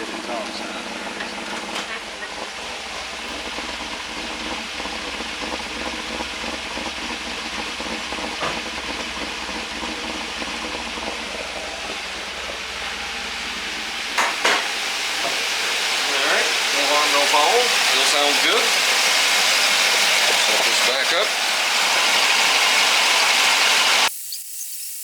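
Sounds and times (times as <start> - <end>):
car engine idling: 0.0 - 5.8.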